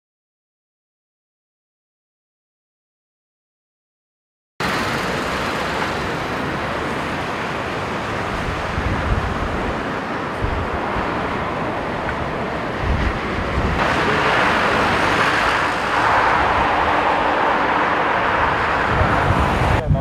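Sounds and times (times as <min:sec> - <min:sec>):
jet engine noise: 0:04.6 - 0:20.0
wind buffeting microphone: 0:06.0 - 0:20.0.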